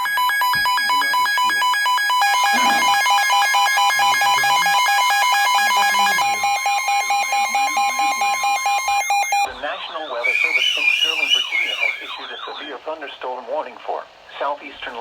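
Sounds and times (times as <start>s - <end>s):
steady alert tone: 0.0s - 10.0s
rapid electronic alarm beeping: 0.0s - 12.8s.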